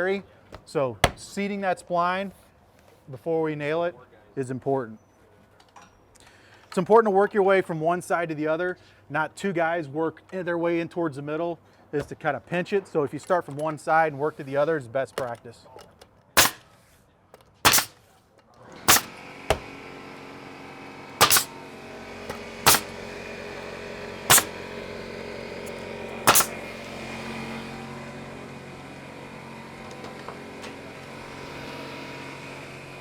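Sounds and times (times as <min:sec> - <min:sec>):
nailing strikes: 0:00.5 - 0:01.4, 0:16.4 - 0:16.6, 0:17.7 - 0:18.0, 0:18.9 - 0:19.8, 0:21.2 - 0:21.6, 0:22.3 - 0:23.0, 0:24.3 - 0:24.6, 0:26.3 - 0:26.6.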